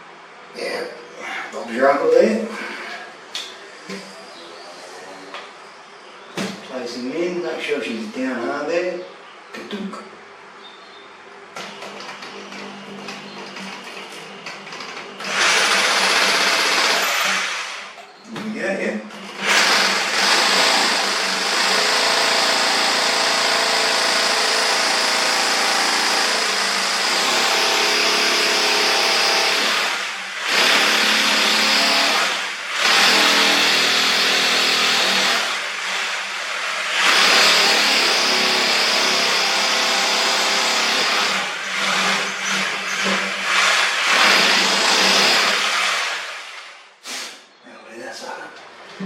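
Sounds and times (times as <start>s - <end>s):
electric drill boring into concrete: 15.2s - 17.9s, 19.4s - 46.8s.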